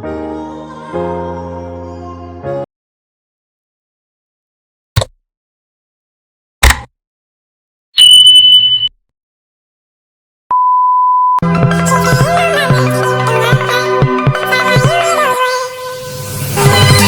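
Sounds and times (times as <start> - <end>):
low censor bleep: 8.0 - 8.9, 10.5 - 11.4
short electronic beeps: 8.0 - 8.9
melodic music: 11.4 - 17.0.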